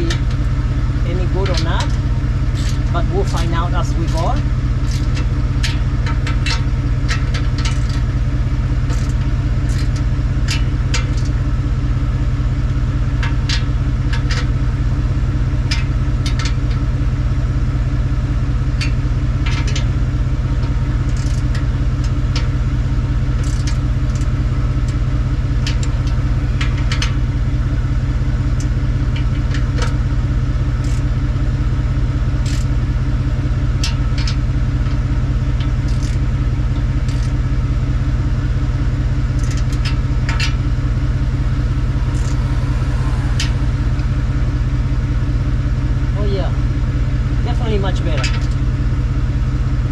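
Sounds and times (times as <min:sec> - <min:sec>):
car engine idling: 0:00.0 - 0:49.9
exhaust leaking air: 0:39.3 - 0:46.2.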